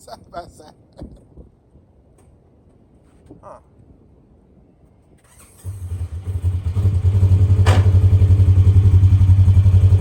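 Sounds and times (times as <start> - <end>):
metal clank: 7.6 - 8.3.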